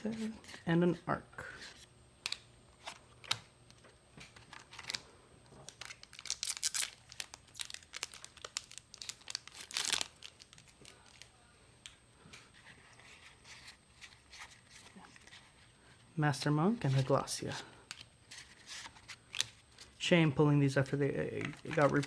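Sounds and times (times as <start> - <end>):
foil wrapper tearing and crinkling: 5.7 - 11.3, 21.5 - 22.0.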